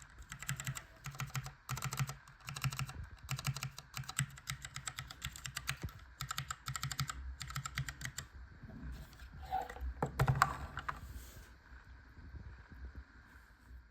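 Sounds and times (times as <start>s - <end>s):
mechanical keyboard switch clicking: 0.2s - 8.2s.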